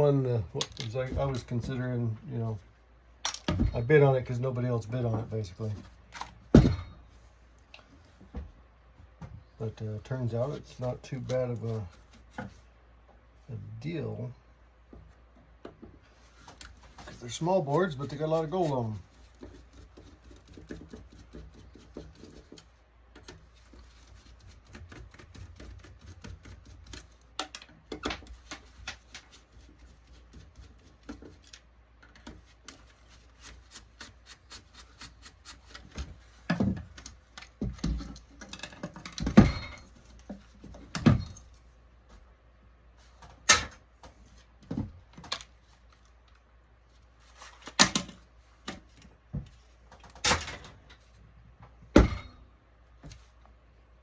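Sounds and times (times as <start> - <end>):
small parts clicking and tapping: 24.6 - 29.3.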